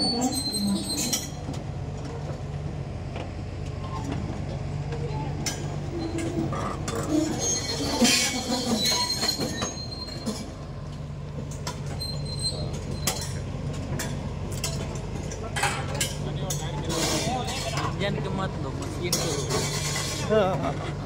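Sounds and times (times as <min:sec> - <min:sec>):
high-pitched metal squeals: 0:00.0 - 0:01.4, 0:05.9 - 0:10.5, 0:11.9 - 0:13.2.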